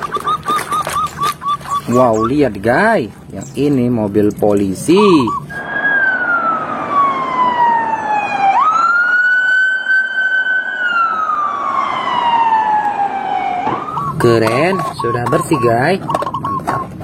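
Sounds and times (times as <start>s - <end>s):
police siren wailing: 5.3s - 17.0s.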